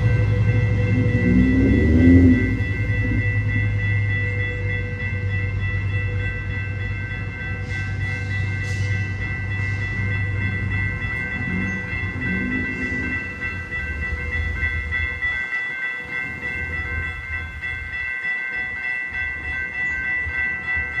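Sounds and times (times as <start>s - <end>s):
railroad crossing bell ringing: 0.0s - 21.0s
train rumbling past: 0.0s - 21.0s.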